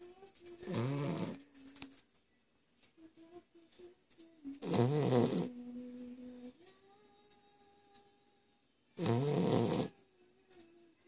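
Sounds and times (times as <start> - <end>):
loud snoring: 0.7 - 1.4, 4.6 - 5.5, 9.0 - 9.9.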